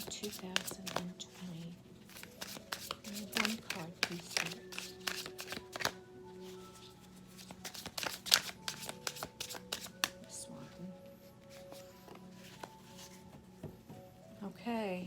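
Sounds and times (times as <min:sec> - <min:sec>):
cards shuffled by hand: 0:00.0 - 0:01.1, 0:02.1 - 0:06.0, 0:06.8 - 0:10.2, 0:11.5 - 0:13.2
soft background music: 0:00.0 - 0:15.0.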